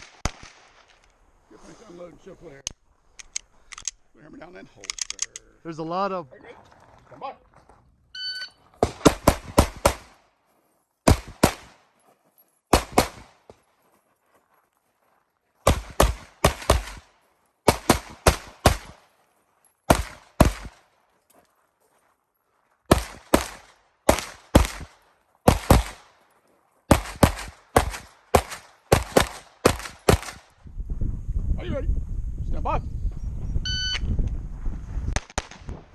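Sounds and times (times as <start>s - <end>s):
pistol shots: 8.8s - 10.2s, 11.0s - 11.9s, 12.7s - 13.5s, 15.6s - 19.1s, 19.9s - 20.9s, 22.9s - 26.2s, 26.9s - 30.6s.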